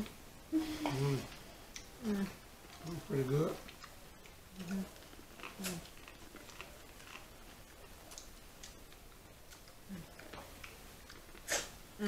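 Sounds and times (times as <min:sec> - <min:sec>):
person humming low mm: 0:02.0 - 0:02.4
eating clicks and mouth smacks: 0:02.7 - 0:11.8.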